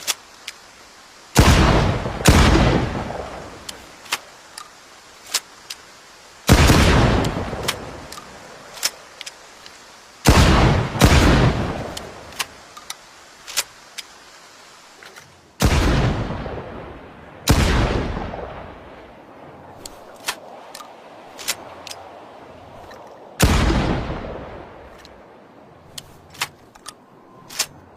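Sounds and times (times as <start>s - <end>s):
shotgun blasts: 1.4s - 3.2s.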